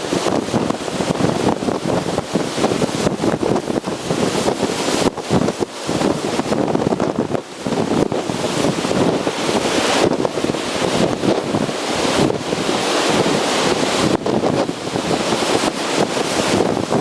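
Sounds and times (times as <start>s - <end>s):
gale wind buffeting microphone: 0.0s - 17.0s
waves breaking on shore: 0.0s - 17.0s.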